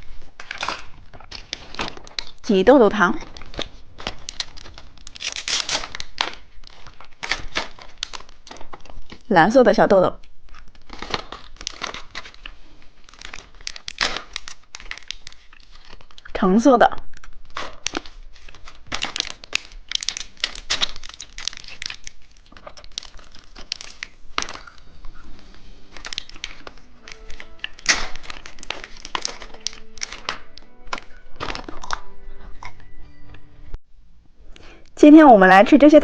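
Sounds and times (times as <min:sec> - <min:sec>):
plastic wrappers crinkling: 0:00.0 - 0:33.0
faint music: 0:23.0 - 0:33.8.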